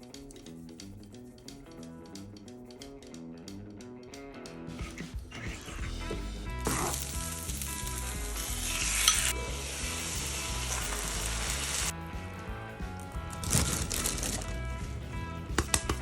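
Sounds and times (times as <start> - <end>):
soft background music: 0.0 - 16.0
food sizzling in frying pan: 6.6 - 11.9.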